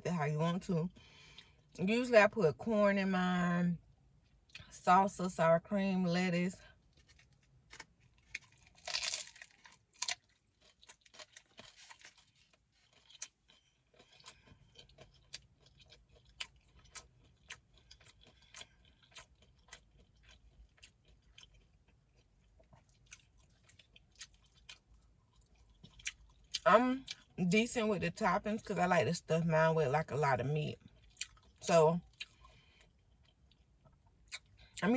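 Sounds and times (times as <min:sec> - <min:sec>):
person chewing crunchy food: 0:06.8 - 0:27.4, 0:30.8 - 0:34.8.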